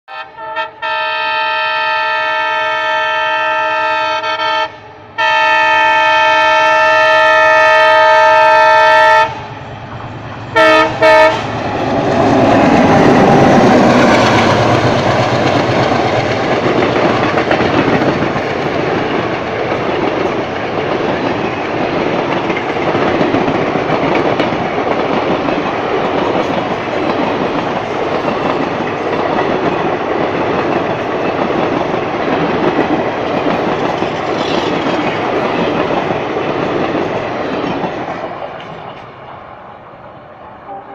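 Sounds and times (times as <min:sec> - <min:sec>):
locomotive horn blasts: 0:00.1 - 0:09.4, 0:10.6 - 0:11.5, 0:40.6 - 0:40.9
train coaches rumbling: 0:00.1 - 0:40.9
locomotive passing at speed: 0:05.0 - 0:40.9
wheels clacking over rail joints: 0:09.7 - 0:39.3.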